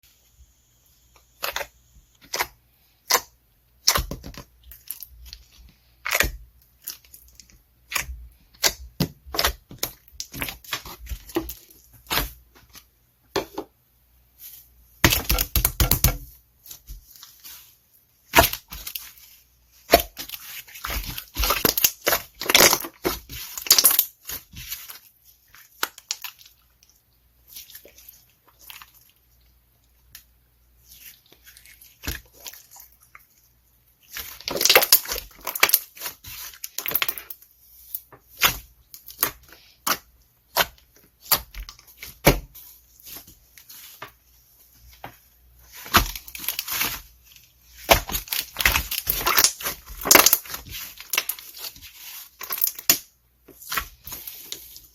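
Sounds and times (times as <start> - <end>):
crunching and tearing: 34.1 - 37.4, 45.7 - 54.8.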